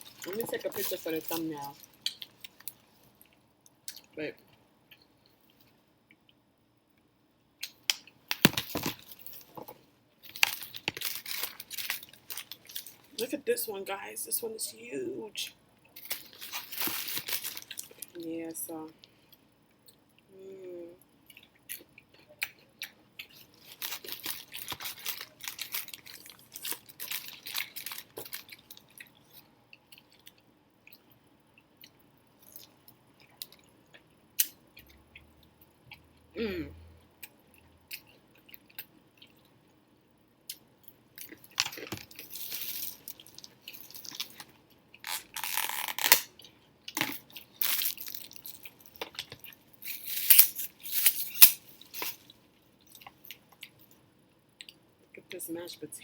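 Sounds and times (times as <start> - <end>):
person chewing crispy chicken: 21.3 - 31.2, 41.2 - 50.2.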